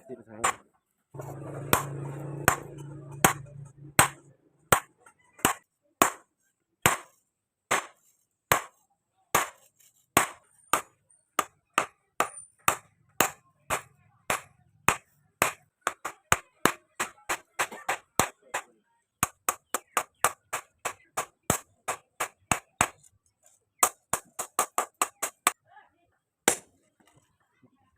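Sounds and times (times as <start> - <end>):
hammer striking steel: 1.2 - 6.2.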